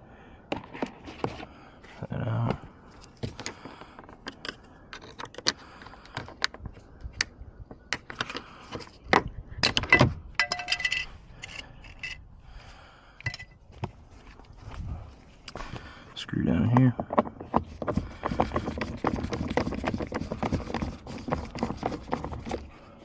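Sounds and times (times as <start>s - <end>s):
hand tools clicking and rattling: 9.7s - 12.2s
ringing metal clink: 10.4s - 11.1s.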